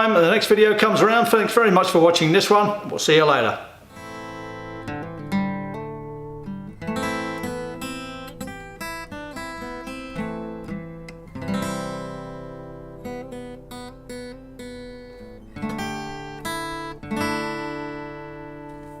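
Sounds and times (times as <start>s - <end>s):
acoustic guitar strumming: 3.7s - 19.0s.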